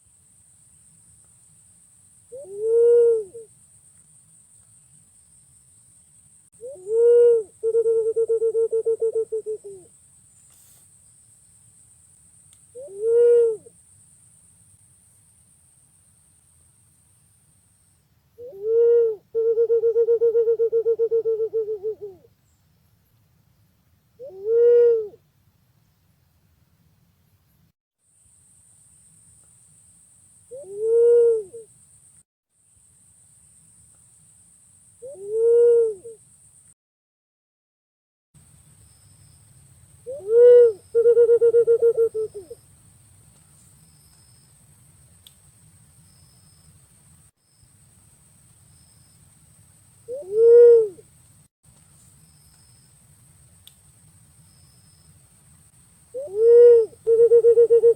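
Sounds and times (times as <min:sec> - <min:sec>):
faint high hiss: 0:00.0 - 0:36.8, 0:38.4 - 0:57.9
pigeon cooing: 0:02.3 - 0:03.5, 0:06.6 - 0:09.9, 0:12.8 - 0:13.7, 0:18.4 - 0:22.3, 0:24.2 - 0:25.2, 0:30.6 - 0:31.7, 0:35.0 - 0:36.2, 0:40.1 - 0:42.6, 0:50.1 - 0:51.0, 0:56.2 - 0:57.9.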